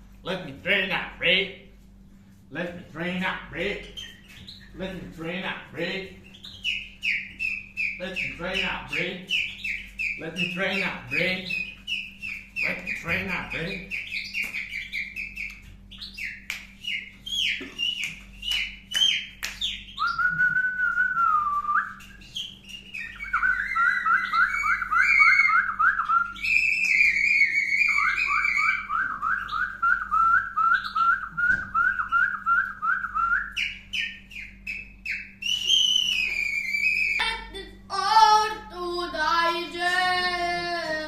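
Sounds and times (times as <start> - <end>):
person whistling: 20.0 - 22.0.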